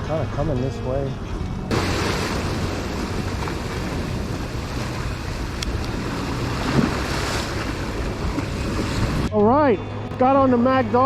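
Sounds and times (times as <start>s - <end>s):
wind buffeting microphone: 1.6s - 9.3s
ocean surf: 1.7s - 9.3s.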